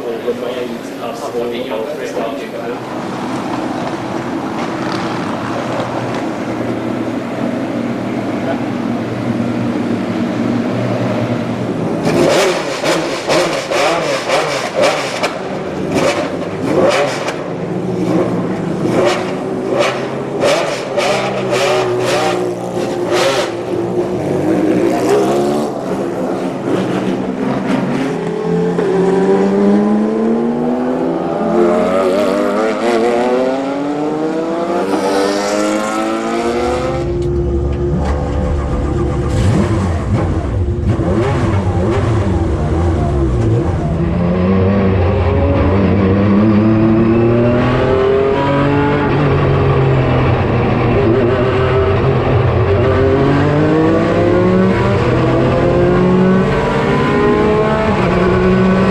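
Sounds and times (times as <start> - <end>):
racing engine revving: 10.2 - 58.9.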